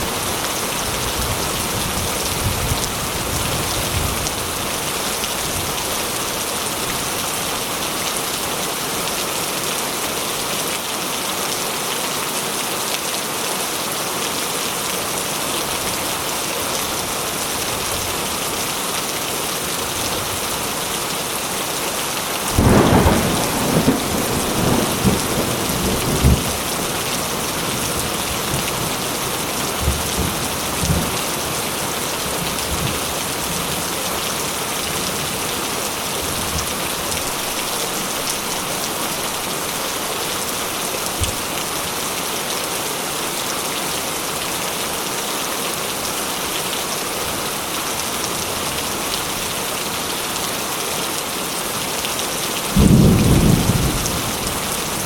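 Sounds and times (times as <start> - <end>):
heavy rain falling: 0.0 - 55.0
thunder rumbling and crackling: 22.5 - 31.2, 52.8 - 55.0.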